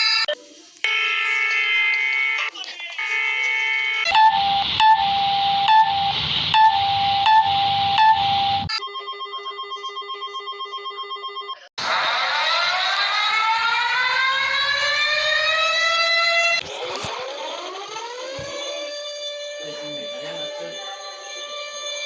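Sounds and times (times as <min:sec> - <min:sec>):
siren winding up: 0:04.0 - 0:11.1, 0:11.8 - 0:22.0
steady electronic alarm tone: 0:04.0 - 0:22.0.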